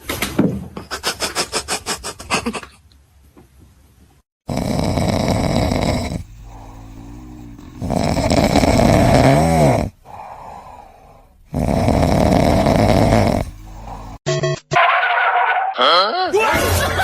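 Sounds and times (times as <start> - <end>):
loud rasping snoring: 4.4 - 14.2
whistling snore: 4.5 - 9.9, 11.6 - 14.2
breathing: 6.2 - 8.0, 10.0 - 11.8, 13.4 - 14.2.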